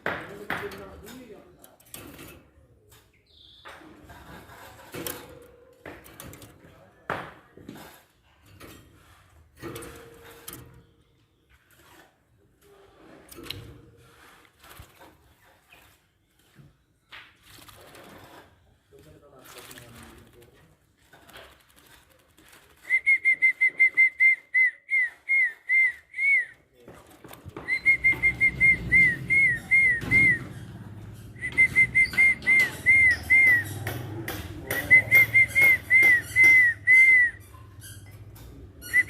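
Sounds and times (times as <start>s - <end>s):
bird whistling short notes: 34.8s - 37.4s.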